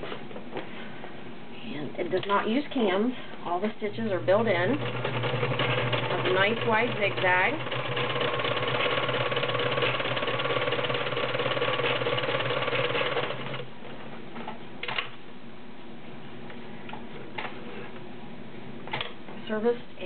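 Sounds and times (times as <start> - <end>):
sewing machine running: 4.5 - 13.7.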